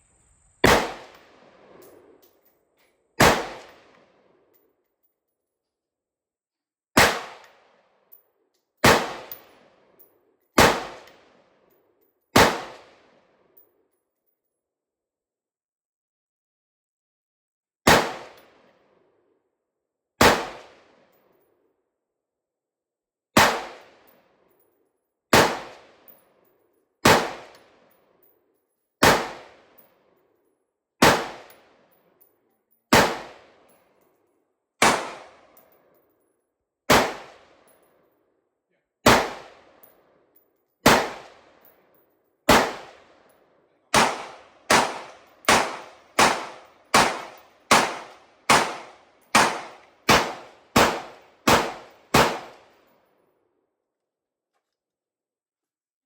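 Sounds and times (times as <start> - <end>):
rifle shots with echo: 0.6 - 2.2, 3.2 - 4.2, 7.0 - 7.8, 8.8 - 9.8, 10.6 - 11.4, 12.4 - 13.2, 17.9 - 18.8, 20.2 - 21.0, 23.4 - 24.1, 25.3 - 26.1, 27.0 - 27.9, 29.0 - 29.8, 31.0 - 31.8, 32.9 - 33.7, 34.8 - 35.6, 36.9 - 37.7, 39.0 - 39.9, 40.8 - 41.7, 42.5 - 43.3, 43.9 - 52.8.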